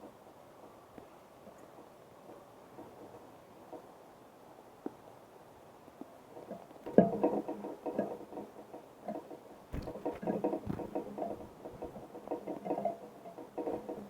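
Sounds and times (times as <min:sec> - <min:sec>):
birds pecking at seed feeder: 0:06.9 - 0:14.0
heavy thumps: 0:09.7 - 0:12.4.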